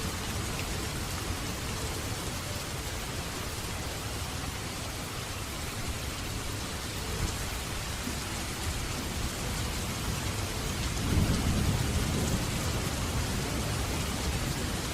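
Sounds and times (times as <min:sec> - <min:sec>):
steady rain hissing: 0:00.0 - 0:14.9
thunder rumbling: 0:08.0 - 0:14.9.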